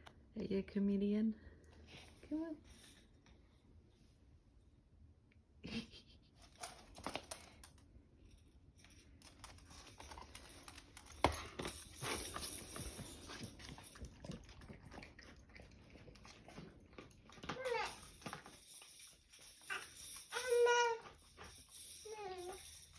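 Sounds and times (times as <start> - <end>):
pet clicks and rustles: 6.4 - 22.9.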